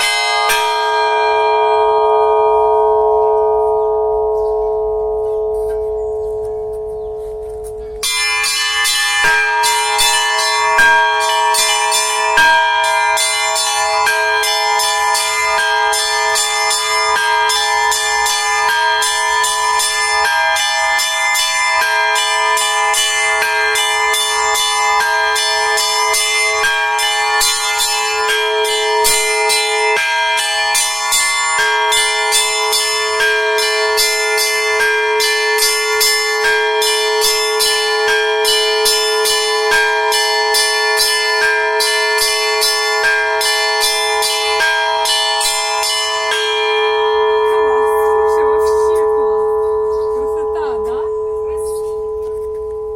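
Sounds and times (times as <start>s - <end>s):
low bell ringing: 0.0s - 52.9s
small bells struck rapidly: 0.0s - 52.9s.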